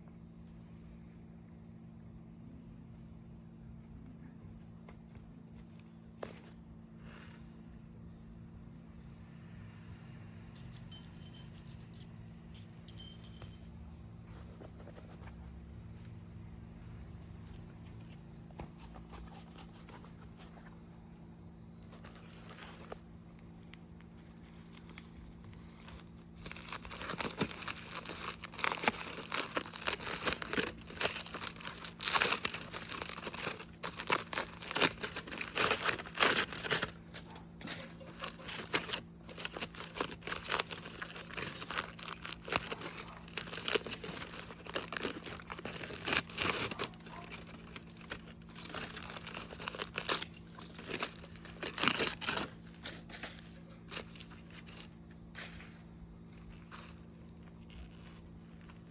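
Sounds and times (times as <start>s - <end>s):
low steady hum: 0.0s - 58.9s
wrapping crinkling: 19.0s - 58.9s.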